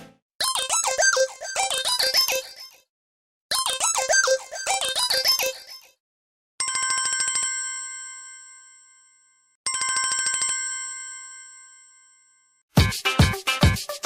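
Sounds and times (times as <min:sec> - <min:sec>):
bell-like phone ringtone: 0:06.6 - 0:12.6.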